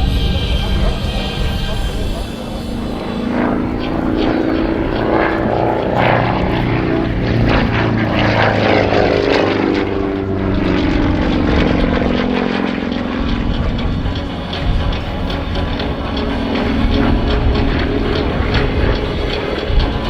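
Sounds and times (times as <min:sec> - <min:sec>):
aircraft radial engine and propeller: 0:00.0 - 0:20.0.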